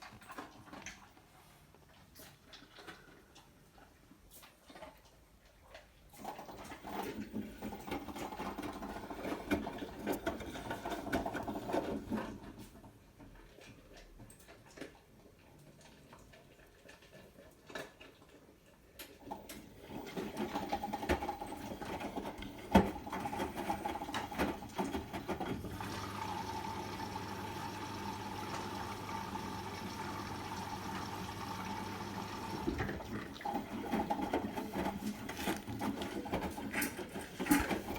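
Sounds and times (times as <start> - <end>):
washing machine drum motor rattling: 19.9 - 37.9.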